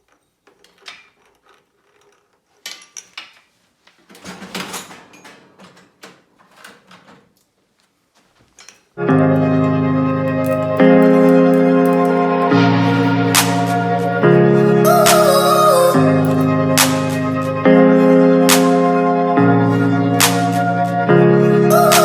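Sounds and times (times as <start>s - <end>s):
clicks and scrapes of hand work: 0.0s - 4.2s
keyboard music with held chords: 9.0s - 22.0s.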